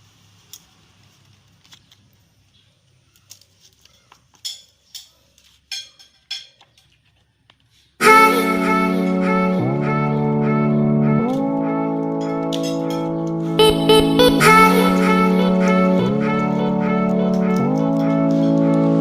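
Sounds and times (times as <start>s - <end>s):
music with guitar and singing: 8.0s - 19.0s.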